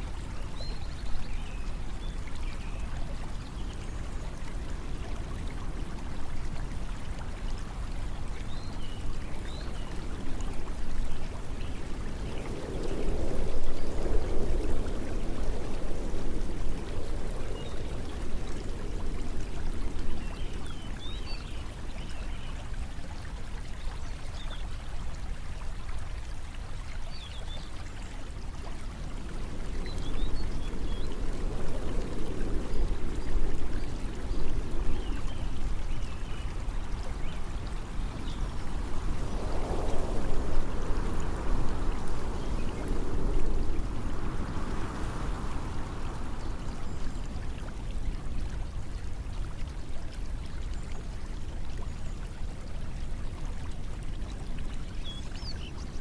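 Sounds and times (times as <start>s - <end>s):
continuous rushing noise: 28.9s - 49.6s.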